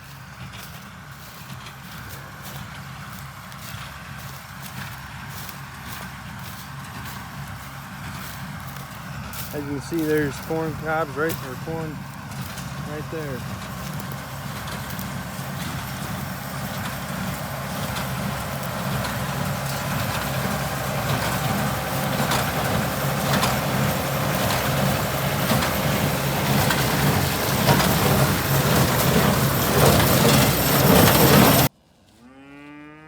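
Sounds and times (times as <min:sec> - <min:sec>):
utility vehicle engine running: 0:00.0 - 0:31.7.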